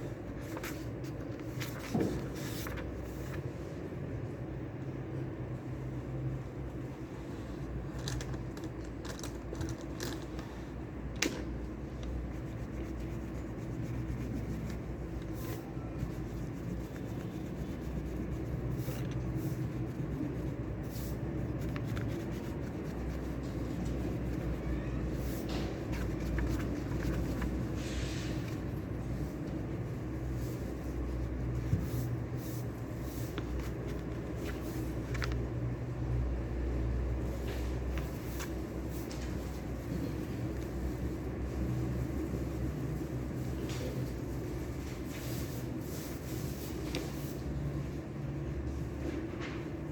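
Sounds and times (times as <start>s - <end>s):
steady low hum: 0.0s - 43.6s.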